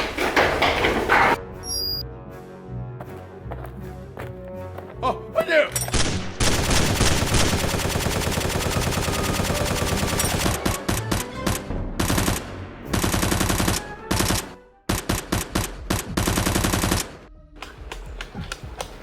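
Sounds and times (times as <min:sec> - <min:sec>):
automatic gunfire: 0:06.0 - 0:17.2.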